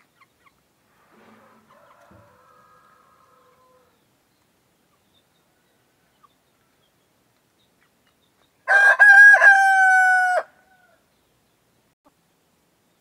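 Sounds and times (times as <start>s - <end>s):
cockerel crowing: 1.3s - 4.0s, 8.6s - 11.0s.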